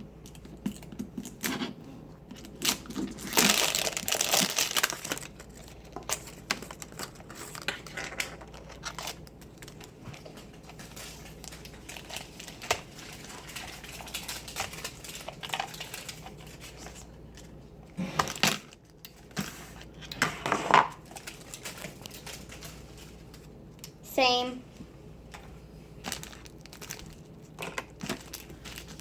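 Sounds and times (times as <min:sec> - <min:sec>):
plastic packaging crinkling: 0:02.3 - 0:20.1, 0:20.9 - 0:23.8, 0:26.0 - 0:29.0.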